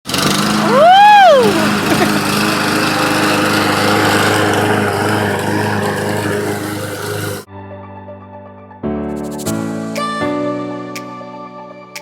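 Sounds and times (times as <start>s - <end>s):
small motor humming and whirring: 0.1s - 7.5s.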